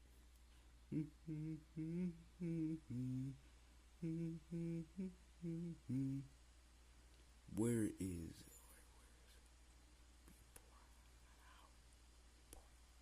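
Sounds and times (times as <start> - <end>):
person humming a tune: 0.9 - 3.4, 4.0 - 6.3.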